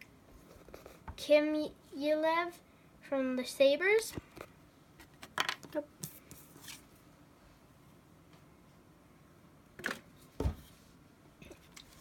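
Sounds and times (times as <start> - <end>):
cards sliding and rustling: 6.0 - 6.9.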